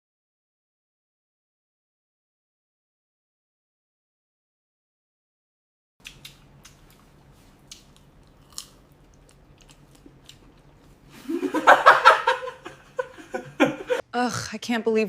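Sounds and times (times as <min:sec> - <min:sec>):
crunching and chewing food: 0:06.0 - 0:11.1.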